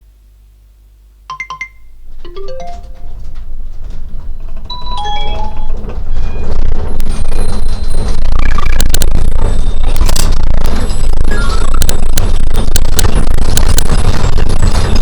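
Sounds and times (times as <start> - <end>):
bell-like notes: 1.3 - 3.3, 4.7 - 5.8
warning chime tones: 1.3 - 3.3, 4.7 - 5.9.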